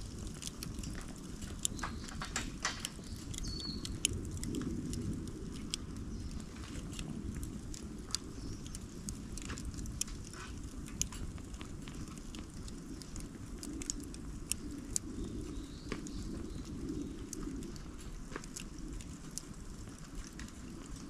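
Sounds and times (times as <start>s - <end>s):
bonfire crackling and popping: 0.0s - 21.0s
low rumble of flames: 0.0s - 21.0s.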